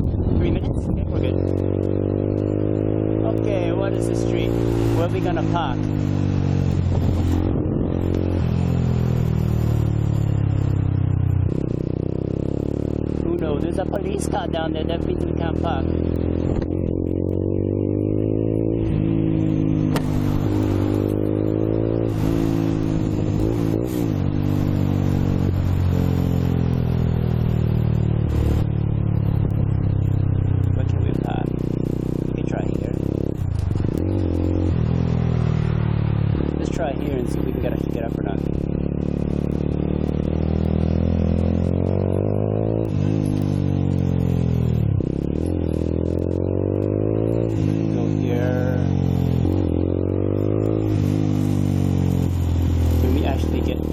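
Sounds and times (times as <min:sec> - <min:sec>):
wind rush: 0:00.0 - 0:02.5, 0:04.6 - 0:10.8, 0:18.5 - 0:26.2
motorcycle engine accelerating: 0:00.0 - 0:53.9.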